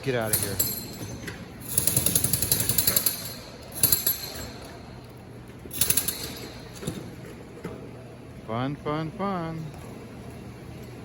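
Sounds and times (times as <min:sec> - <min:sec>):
jackhammer breaking concrete: 0:01.6 - 0:04.5, 0:05.7 - 0:07.0.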